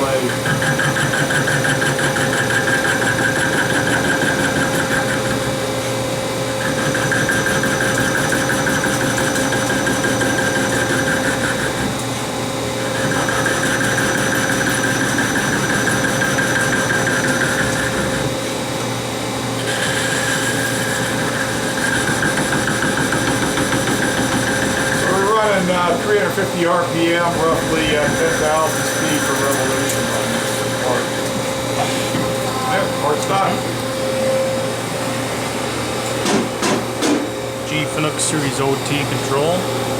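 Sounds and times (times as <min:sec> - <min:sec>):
lathe machine hum: 0:00.0 - 0:39.9.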